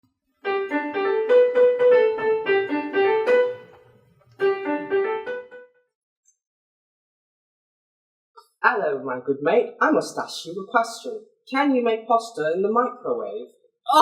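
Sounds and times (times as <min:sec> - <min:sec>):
piano-like keyboard tune: 0:00.4 - 0:05.8.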